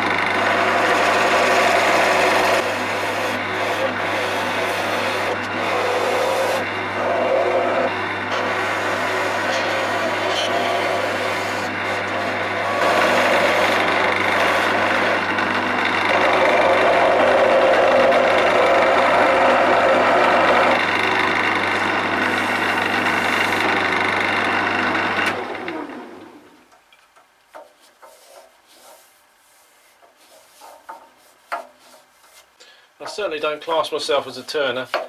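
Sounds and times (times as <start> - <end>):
tool scraping spinning wood: 0.0 - 25.8, 27.6 - 35.0
lathe winding down: 0.0 - 26.5
wood lathe motor hum: 0.0 - 26.6.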